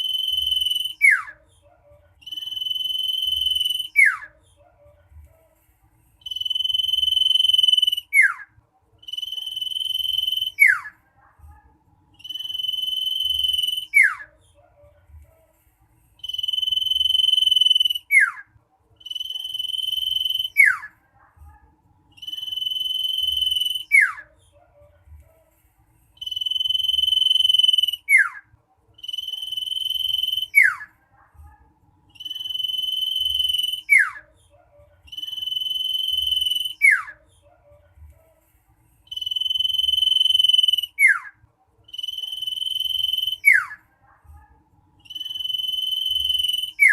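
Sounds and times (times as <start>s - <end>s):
bird whistling song: 0.0s - 1.4s, 2.2s - 4.4s, 6.2s - 10.9s, 12.2s - 14.3s, 16.2s - 18.4s, 19.0s - 20.9s, 22.2s - 24.3s, 26.2s - 28.4s, 29.0s - 30.9s, 32.1s - 34.3s, 35.1s - 37.2s, 39.1s - 41.3s, 41.9s - 43.8s, 45.0s - 46.9s.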